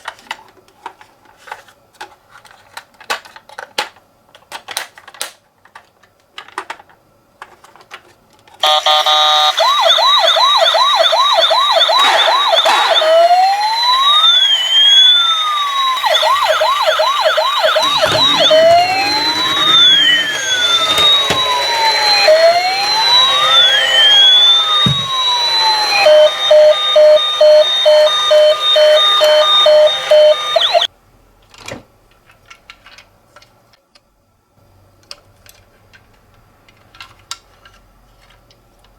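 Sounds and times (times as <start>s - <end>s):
toy electronic siren: 8.6s - 30.9s.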